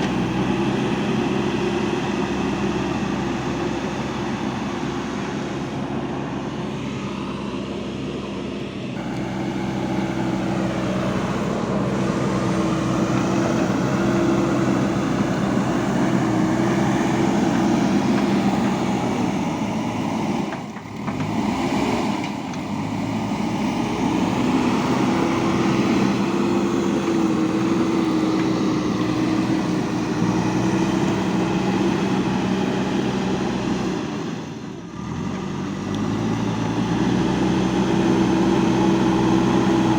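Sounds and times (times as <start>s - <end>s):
backhoe diesel engine under load: 0.0s - 39.9s.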